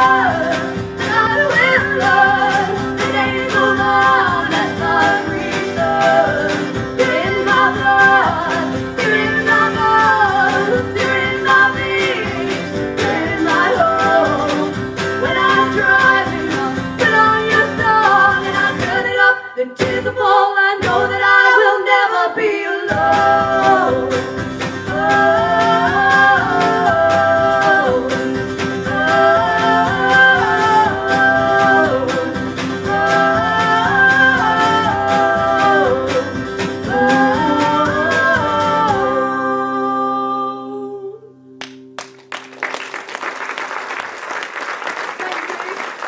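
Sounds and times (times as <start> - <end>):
strummed guitar: 0.0 - 19.2, 22.9 - 40.1
person singing: 0.0 - 41.4
applause: 41.6 - 46.0.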